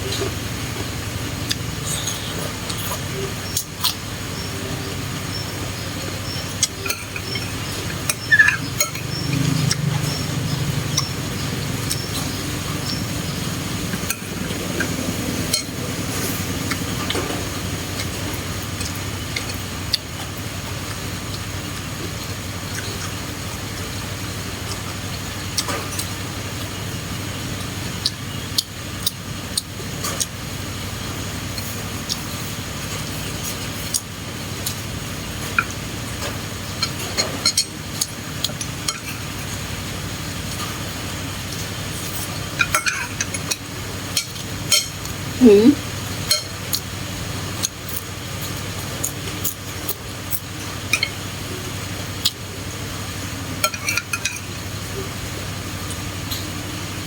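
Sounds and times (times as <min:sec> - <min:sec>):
steady low hum: 0:00.0 - 0:57.0
eating mouth sounds: 0:01.4 - 0:20.1
utensils clicking on dishes: 0:06.2 - 0:10.2, 0:35.5 - 0:39.3, 0:42.1 - 0:45.2, 0:53.6 - 0:54.6
utensils clinking on a dish: 0:42.6 - 0:45.0, 0:53.6 - 0:54.6.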